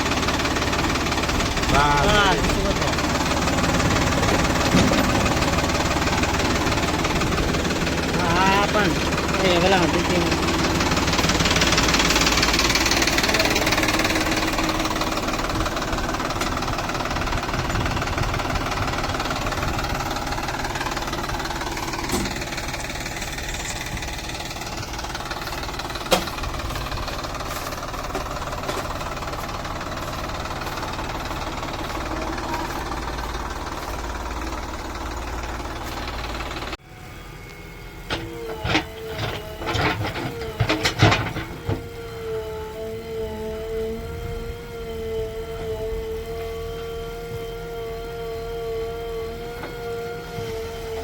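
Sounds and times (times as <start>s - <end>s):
diesel engine knocking rumble: 0.0s - 36.8s, 38.1s - 42.0s.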